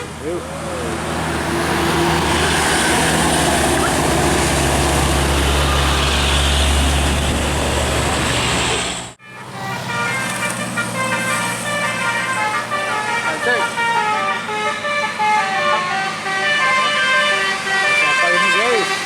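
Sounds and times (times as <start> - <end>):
bus diesel engine passing: 0.0 - 19.0
road noise: 0.0 - 19.0
bus horn playing a tune: 9.2 - 19.0.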